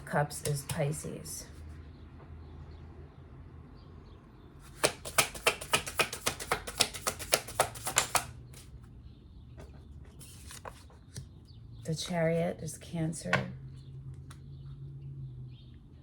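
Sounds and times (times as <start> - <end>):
cards being shuffled: 4.7 - 8.7, 10.2 - 11.3.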